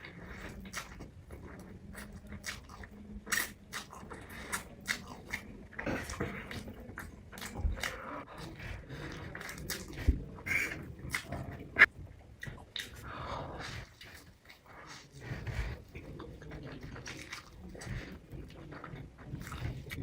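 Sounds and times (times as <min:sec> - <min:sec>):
chewing noodles: 0:00.0 - 0:20.0.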